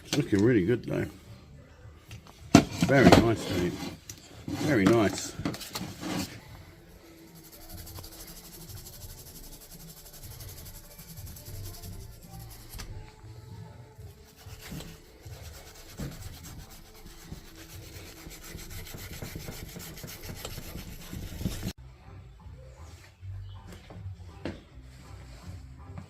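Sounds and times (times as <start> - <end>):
hand rubbing and scraping metal: 2.6 - 21.8.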